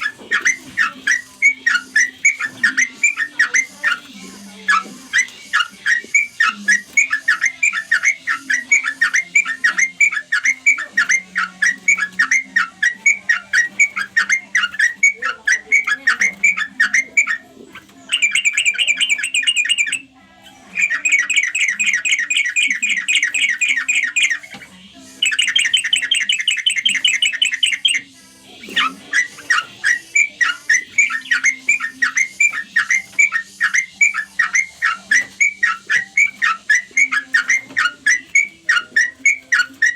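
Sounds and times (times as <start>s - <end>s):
bird chirping: 0.0s - 39.9s
bird trilled chatter: 0.0s - 39.9s.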